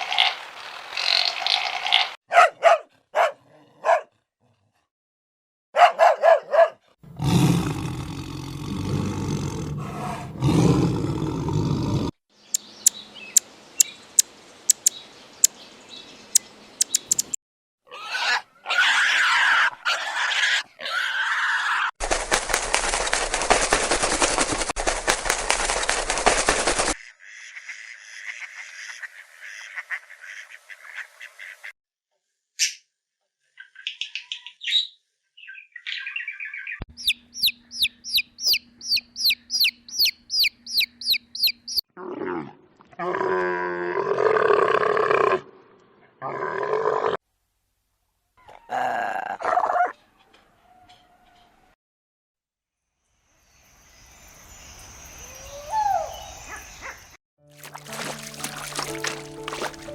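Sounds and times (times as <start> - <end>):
sharp clicks: 14.7 - 14.9, 16.8 - 17.4.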